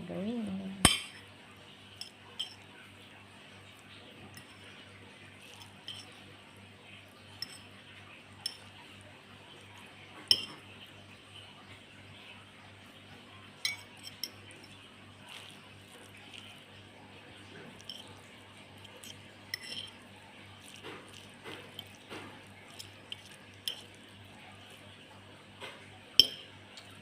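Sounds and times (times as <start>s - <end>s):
faint low hum: 0.0s - 27.0s
utensils clinking on a dish: 2.0s - 2.7s, 5.4s - 6.2s, 13.6s - 15.6s, 17.7s - 18.2s, 18.8s - 24.8s, 25.6s - 27.0s.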